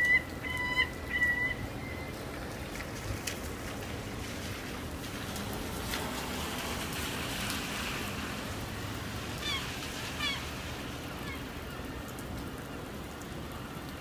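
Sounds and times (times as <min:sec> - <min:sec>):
gulls calling: 0:00.0 - 0:02.3, 0:09.4 - 0:12.1
outdoor rushing noise: 0:02.6 - 0:11.2.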